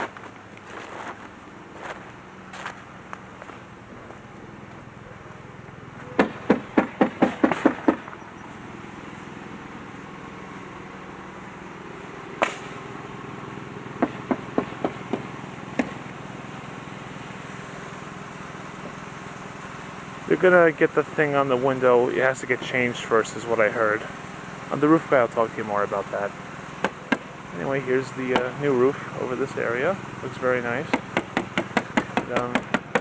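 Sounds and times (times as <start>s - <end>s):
steady low hum: 0.0s - 33.0s
hammer blows on roof: 6.2s - 8.1s, 14.0s - 16.0s, 30.9s - 33.0s.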